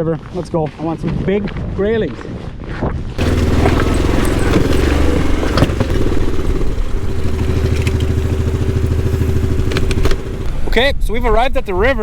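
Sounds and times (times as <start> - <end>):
clatters and knocks: 3.2 - 10.5
atv engine running: 3.2 - 10.8.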